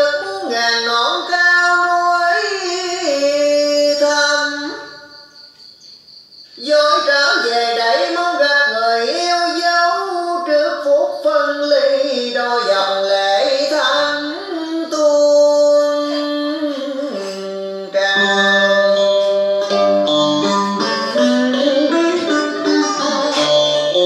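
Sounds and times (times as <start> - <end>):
person singing: 0.0 - 5.1, 6.6 - 24.0
instrumental accompaniment: 15.9 - 24.0.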